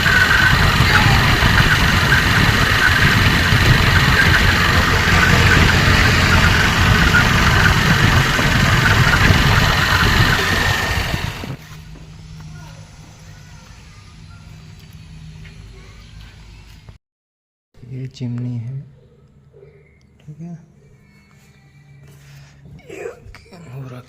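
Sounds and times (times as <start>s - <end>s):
motor running loudly: 0.0s - 11.7s.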